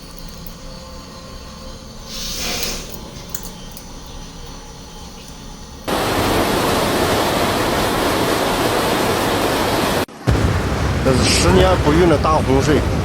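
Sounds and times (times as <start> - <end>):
fast-flowing floodwater rushing: 5.9 - 13.0.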